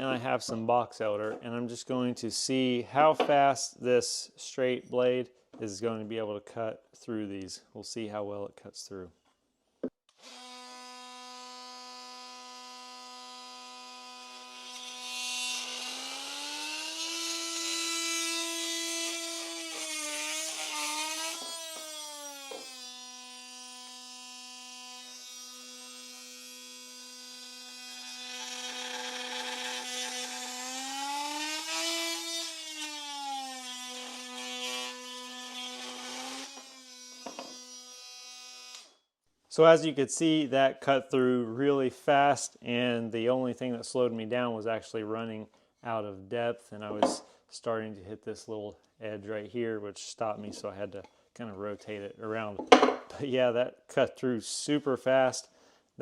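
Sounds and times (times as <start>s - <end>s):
multitool cutting wood: 10.1s - 39.0s.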